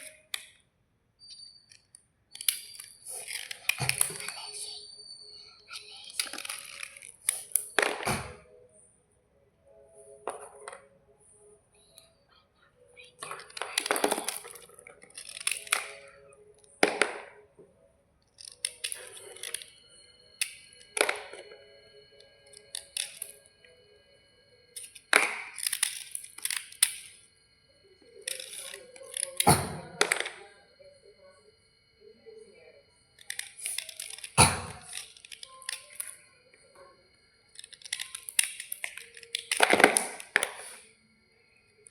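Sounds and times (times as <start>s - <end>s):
slate bars cracking and snapping: 13.4s - 16.1s, 24.8s - 27.2s, 37.6s - 40.8s.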